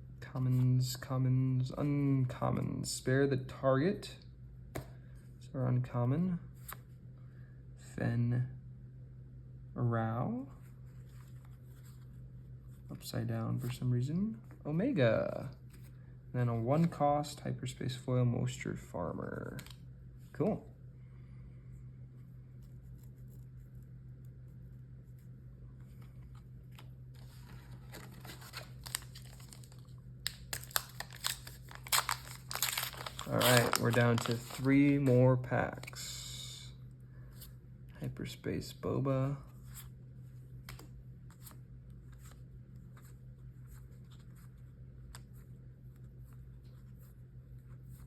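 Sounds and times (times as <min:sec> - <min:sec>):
steady low hum: 0:00.0 - 0:48.0
foil wrapper crinkling: 0:27.9 - 0:35.1.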